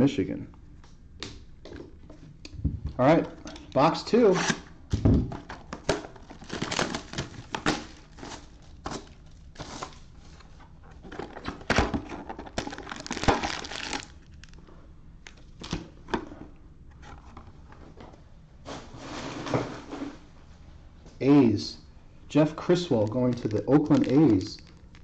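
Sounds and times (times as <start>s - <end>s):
plastic wrap crinkling and tearing: 5.9s - 10.5s, 12.4s - 14.6s, 22.6s - 25.0s.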